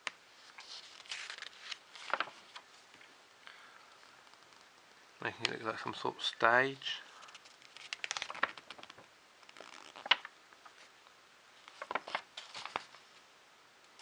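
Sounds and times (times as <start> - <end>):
magazine pages turning: 0.4 - 2.7, 7.2 - 10.9, 11.6 - 13.0.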